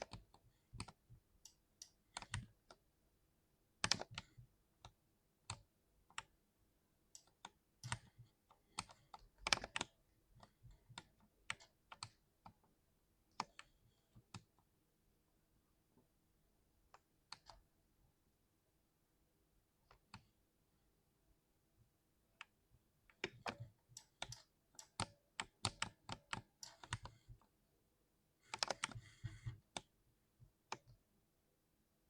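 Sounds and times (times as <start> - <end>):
keyboard typing: 23.1 - 27.2, 28.4 - 30.0.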